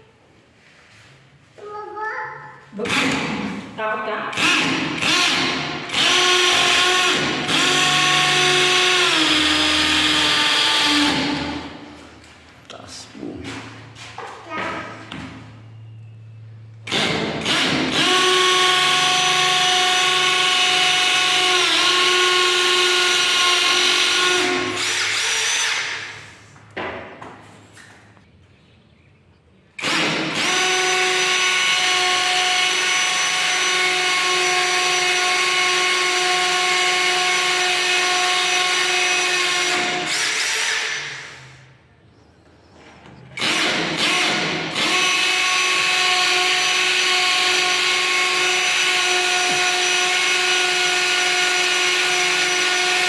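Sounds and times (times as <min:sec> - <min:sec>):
impact drill whining: 0:04.3 - 0:11.9, 0:16.8 - 0:26.4, 0:29.8 - 0:41.5, 0:43.4 - 0:53.0.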